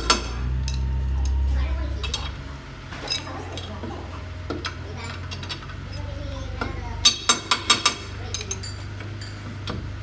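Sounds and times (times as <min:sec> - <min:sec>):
low machine hum: 0:00.0 - 0:10.0
light metallic clinks: 0:04.6 - 0:09.8.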